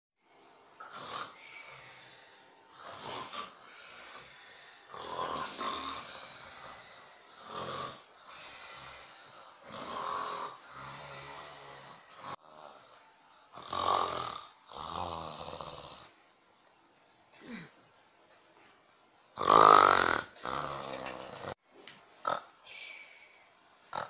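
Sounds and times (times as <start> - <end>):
loud snoring: 0.8 - 16.2, 19.4 - 21.6, 22.2 - 22.5.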